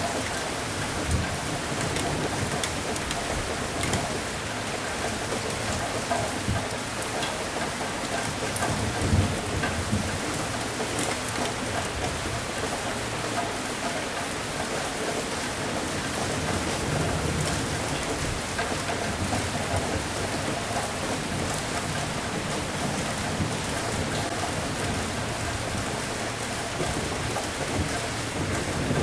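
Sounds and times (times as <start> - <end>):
heavy rain hissing: 0.0 - 29.0
thunder rolling: 16.1 - 29.0.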